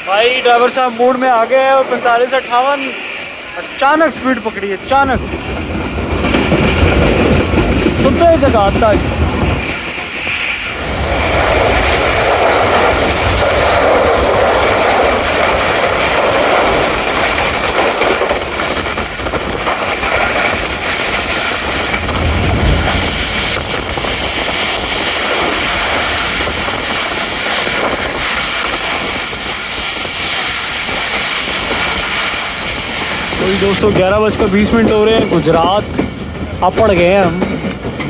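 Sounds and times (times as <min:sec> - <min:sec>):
train wheels rumbling on track: 0:00.0 - 0:38.0
low knocks: 0:21.6 - 0:24.2.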